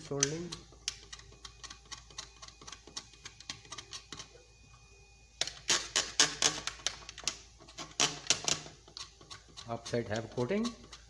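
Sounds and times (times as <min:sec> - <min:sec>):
tool scraping circuit board: 0:05.6 - 0:11.0.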